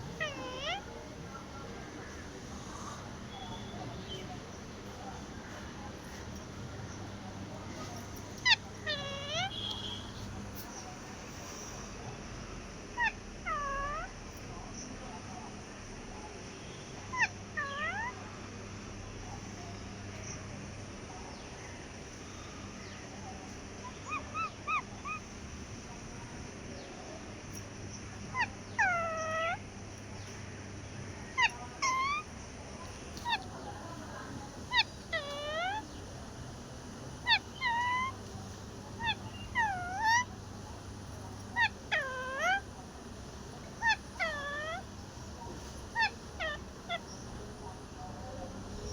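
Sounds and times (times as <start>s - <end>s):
parrot whistled calls: 34.7s - 35.9s, 37.2s - 38.1s, 39.0s - 40.3s, 41.6s - 42.6s, 43.8s - 44.8s.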